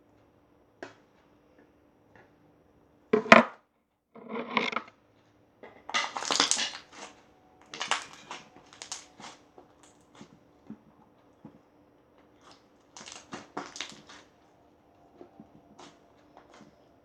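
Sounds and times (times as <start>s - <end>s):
slime crackling and popping: 6.1s - 7.1s, 7.7s - 10.0s, 12.4s - 14.3s.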